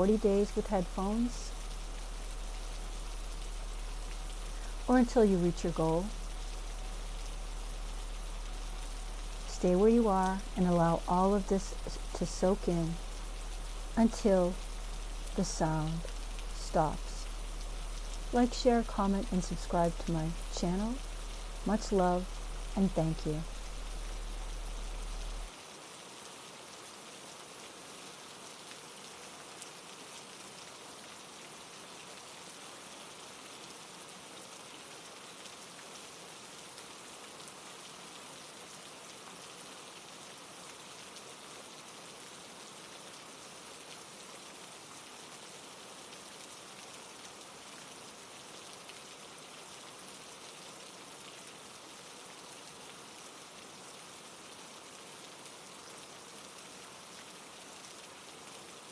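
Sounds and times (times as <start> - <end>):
falling water rushing: 0.0 - 25.5
low hum: 0.0 - 25.5.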